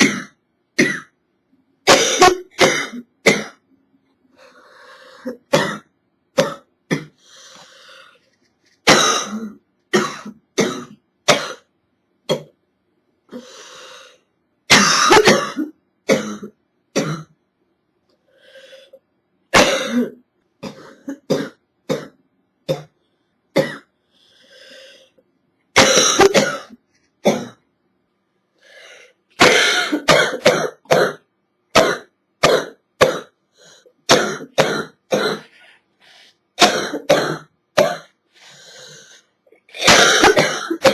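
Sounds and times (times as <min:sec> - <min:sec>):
girl coughing: 0:00.0 - 0:01.2, 0:01.9 - 0:03.6, 0:08.9 - 0:11.7, 0:14.7 - 0:17.3, 0:19.6 - 0:22.9, 0:25.8 - 0:27.6, 0:29.4 - 0:33.4, 0:34.1 - 0:35.6, 0:36.6 - 0:38.1, 0:39.8 - 0:40.9.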